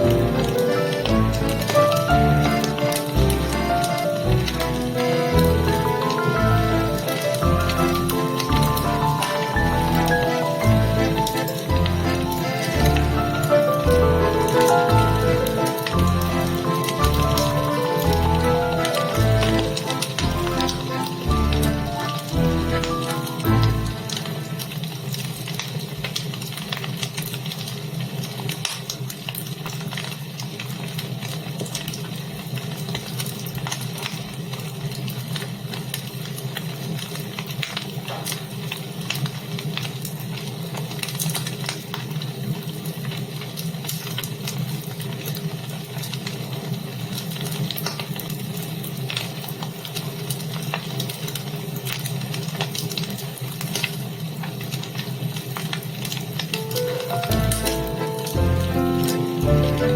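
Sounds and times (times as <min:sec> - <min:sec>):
wood fire crackling: 0:00.0 - 0:59.9.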